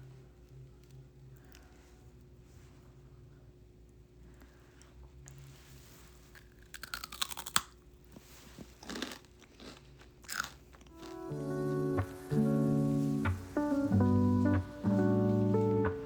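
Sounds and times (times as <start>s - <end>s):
crisp crunching: 5.7s - 11.4s.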